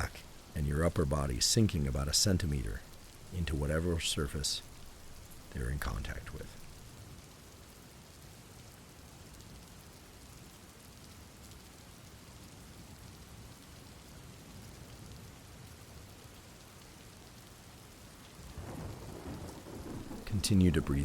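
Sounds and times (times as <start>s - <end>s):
thunder rumble: 0.0s - 6.9s, 18.6s - 21.0s
faint rain: 0.0s - 21.0s.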